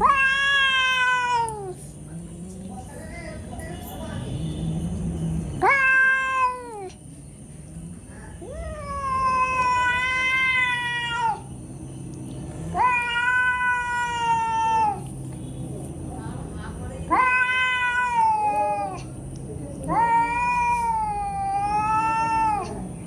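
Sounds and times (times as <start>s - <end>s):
cat meowing: 0.0s - 1.8s, 5.6s - 7.0s, 8.4s - 11.5s, 12.7s - 15.1s, 17.1s - 19.1s, 19.8s - 22.9s.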